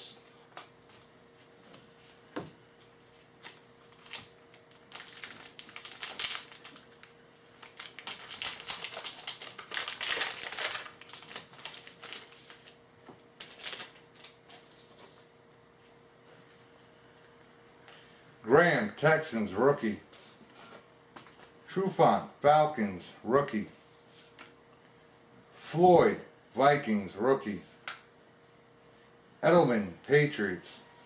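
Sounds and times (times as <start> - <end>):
wrapper crinkling: 3.4 - 12.8, 13.4 - 14.8.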